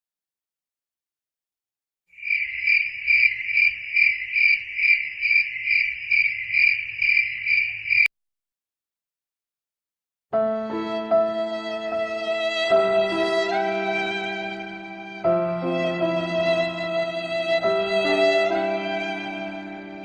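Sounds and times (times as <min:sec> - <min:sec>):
cricket chirping trill: 0:02.2 - 0:08.1.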